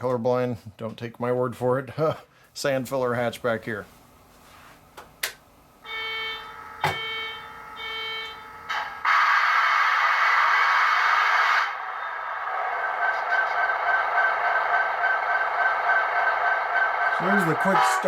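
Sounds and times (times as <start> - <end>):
short buzzing tones: 5.8 - 9.0
model locomotive running sound: 12.1 - 18.0.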